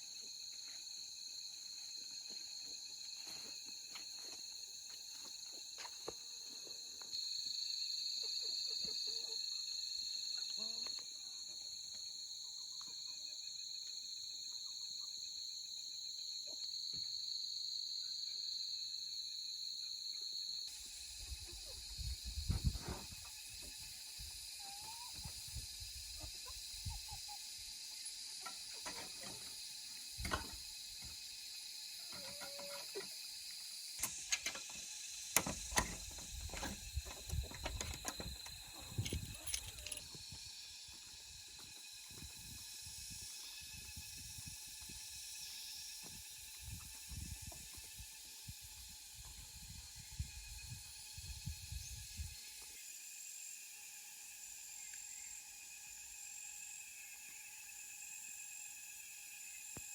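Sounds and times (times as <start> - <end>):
insects chirring: 0.0 - 59.9
small clicks and knocks: 34.0 - 40.1.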